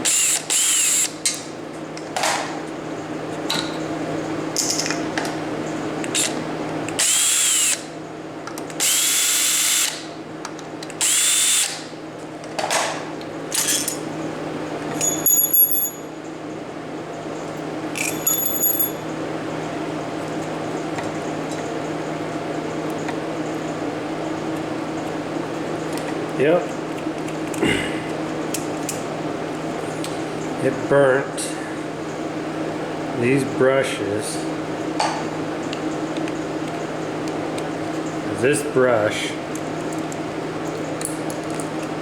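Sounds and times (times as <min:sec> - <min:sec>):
cordless drill whining: 0:07.0 - 0:07.8.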